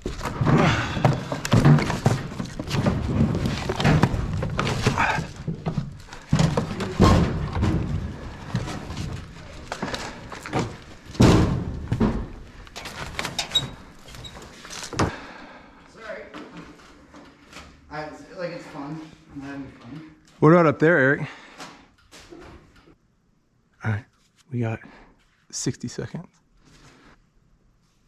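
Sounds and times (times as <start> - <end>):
thumps and knocks of climbing: 0.0 - 15.3.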